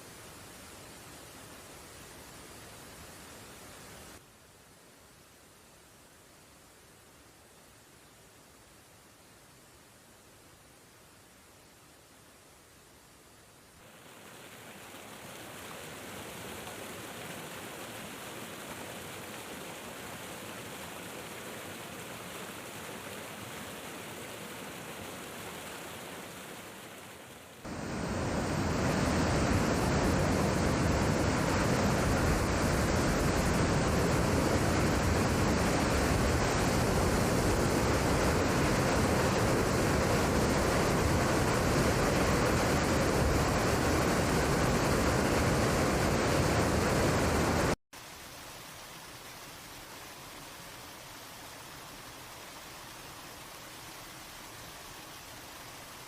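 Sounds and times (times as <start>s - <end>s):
water rushing: 13.8s - 56.0s.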